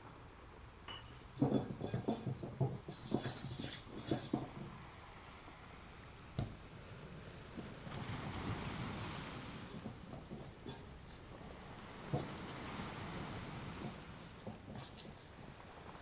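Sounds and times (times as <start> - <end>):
soft rubbing and scraping: 1.4 - 5.4, 7.6 - 16.0.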